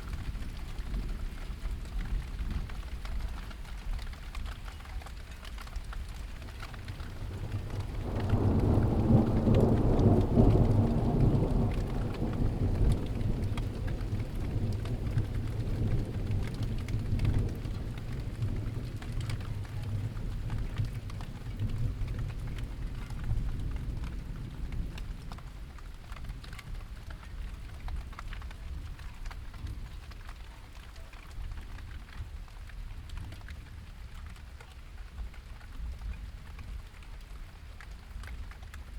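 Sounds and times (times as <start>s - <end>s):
steady rain: 0.0s - 38.9s
rolling thunder: 7.2s - 25.3s.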